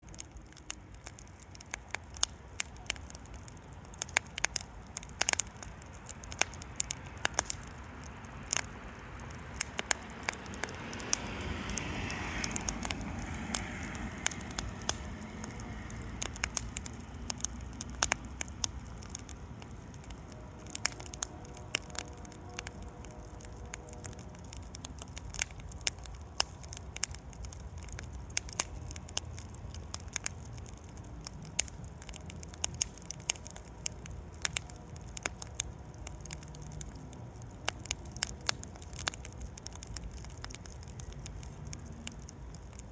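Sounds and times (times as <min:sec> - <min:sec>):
campfire crackling and popping: 0:00.0 - 0:42.9
rush of flame: 0:00.1 - 0:42.9.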